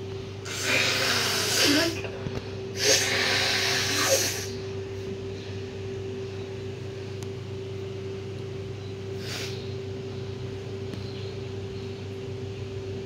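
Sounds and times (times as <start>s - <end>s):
background hum: 0.0s - 13.0s
air blast through nose: 2.8s - 4.6s.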